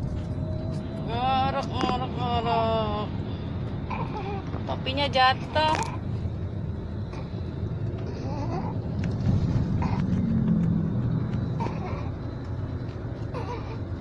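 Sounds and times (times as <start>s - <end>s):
car road rumble: 0.0s - 14.0s
baby snoring: 8.1s - 8.8s, 9.8s - 10.2s, 11.6s - 12.2s, 13.4s - 13.8s.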